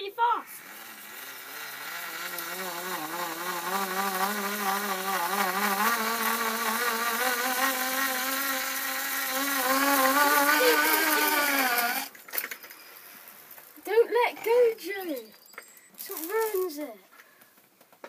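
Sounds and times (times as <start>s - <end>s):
small electric motor buzzing: 0.3s - 13.5s.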